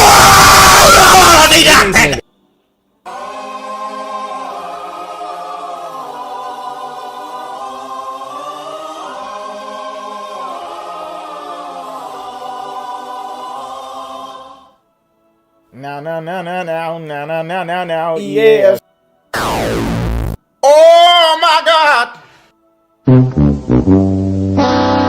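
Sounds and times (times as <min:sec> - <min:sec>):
choir singing held chords: 0:03.0 - 0:18.8.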